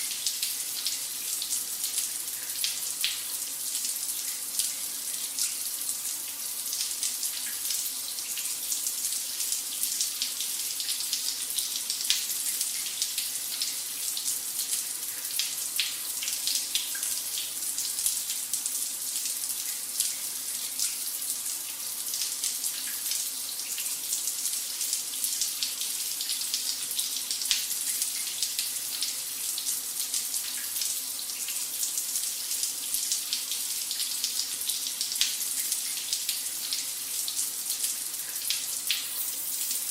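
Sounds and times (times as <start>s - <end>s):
shower water spraying: 38.8s - 39.9s.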